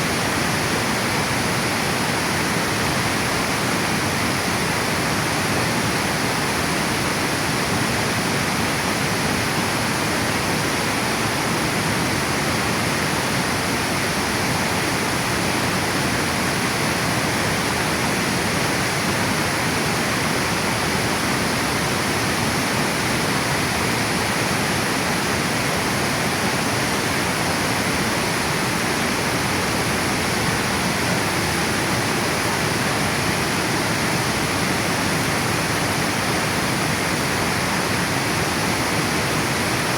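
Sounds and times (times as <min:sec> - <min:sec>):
water rushing over a weir: 0:00.0 - 0:39.9.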